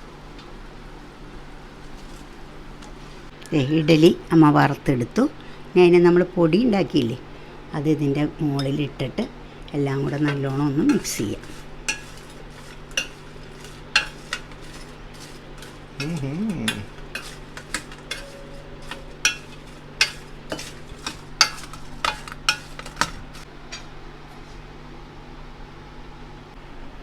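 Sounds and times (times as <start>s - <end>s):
spoon clinking against vessel: 9.9s - 23.4s
spoon stirring food in vessel: 9.9s - 23.5s.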